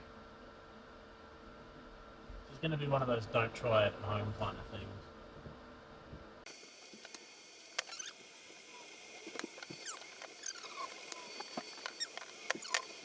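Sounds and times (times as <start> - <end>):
steady high hiss: 6.5 - 13.0.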